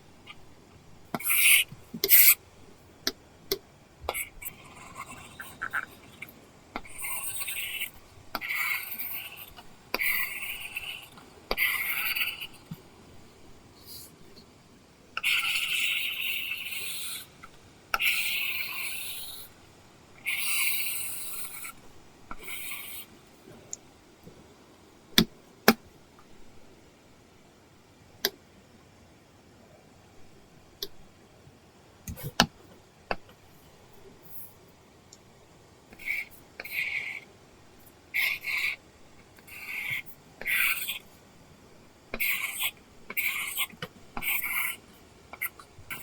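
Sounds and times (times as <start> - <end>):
pencil tip scratching on screen: 4.2 - 12.6, 18.0 - 19.5, 20.2 - 23.1, 39.4 - 41.0, 42.2 - 44.8.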